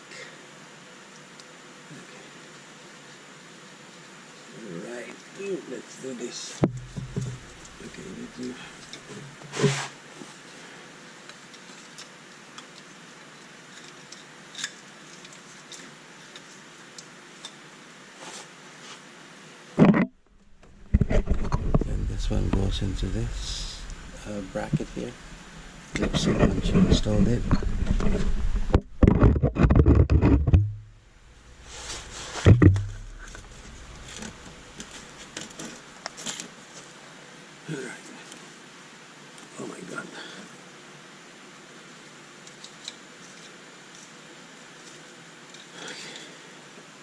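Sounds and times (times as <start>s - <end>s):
steady low hiss: 0.0s - 47.0s
faint ticks and rustling: 6.4s - 9.6s, 10.2s - 17.6s, 42.4s - 46.9s
loud knock: 6.6s - 7.4s, 30.3s - 30.9s, 32.5s - 33.6s
rapid clicks and knocks: 6.6s - 7.8s, 25.9s - 30.8s, 32.4s - 35.7s.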